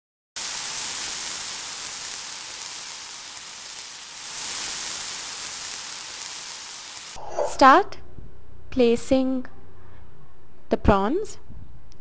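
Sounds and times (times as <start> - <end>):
food sizzling in hot oil: 0.4 - 7.2.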